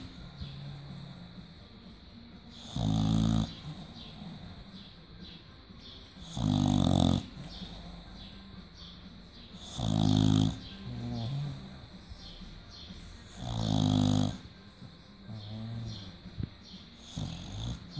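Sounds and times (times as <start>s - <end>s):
dog snoring: 0.0s - 1.7s, 2.4s - 4.9s, 6.1s - 8.4s, 9.4s - 17.9s
dog breathing softly: 6.2s - 8.4s.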